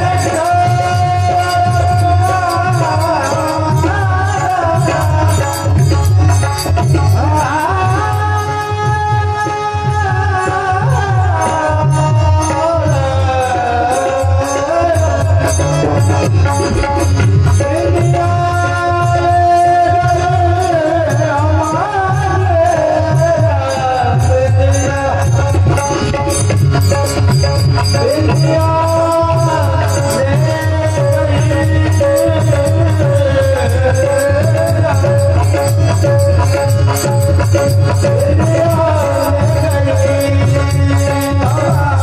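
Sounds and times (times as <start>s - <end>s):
hand drum: 0.0s - 42.0s.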